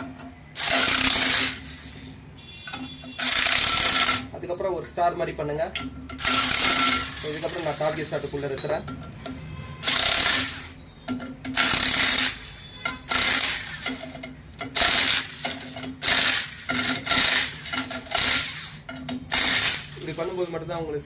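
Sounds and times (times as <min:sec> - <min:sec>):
air impact wrench bursts: 0:00.6 - 0:04.3, 0:06.2 - 0:08.6, 0:09.8 - 0:10.8, 0:11.5 - 0:20.6.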